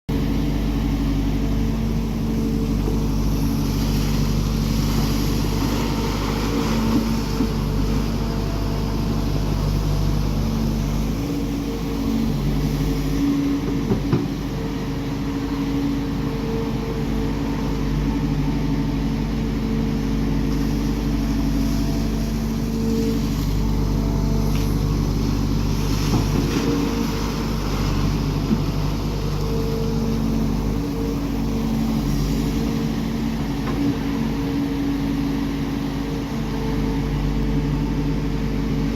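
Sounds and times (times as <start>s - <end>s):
diesel engine running: 0.1s - 38.9s.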